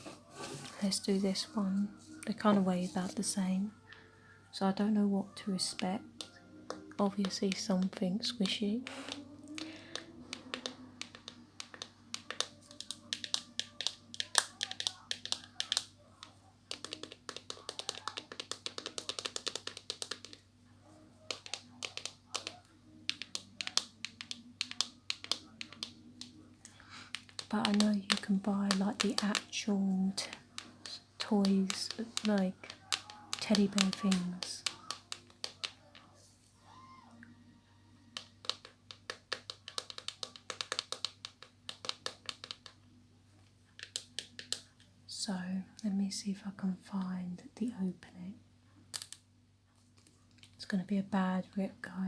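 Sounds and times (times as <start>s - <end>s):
fingernails tapping on plastic: 6.2s - 20.4s, 21.2s - 26.4s, 27.1s - 29.6s, 30.2s - 36.1s, 38.1s - 42.8s, 43.7s - 44.8s.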